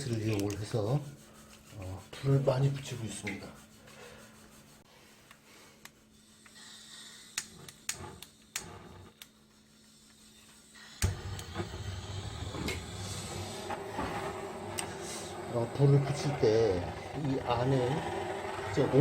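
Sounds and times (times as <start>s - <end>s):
torch flame burning: 5.8s - 9.9s, 10.7s - 19.0s
gas torch ignition click: 7.3s - 9.3s, 11.0s - 11.7s.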